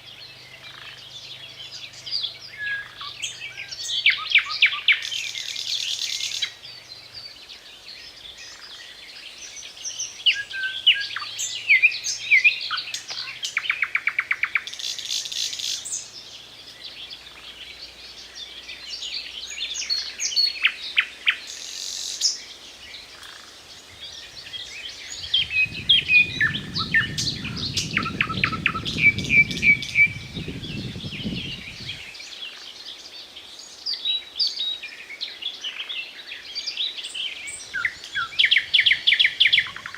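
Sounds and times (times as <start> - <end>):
nightingale singing: 0.0 - 39.9
low rumbling noise: 25.0 - 32.1.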